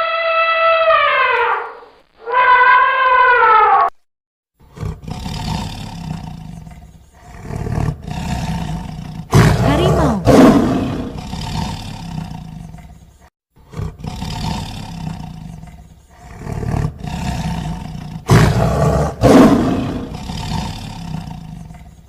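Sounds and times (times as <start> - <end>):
tiger roaring and growling: 4.6 - 22.0.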